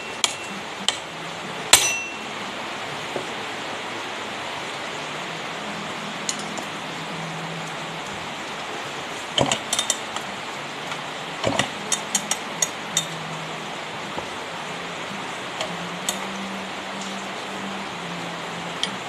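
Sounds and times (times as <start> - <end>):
steady hiss: 0.0 - 19.0
metal tools clinking: 9.4 - 10.0.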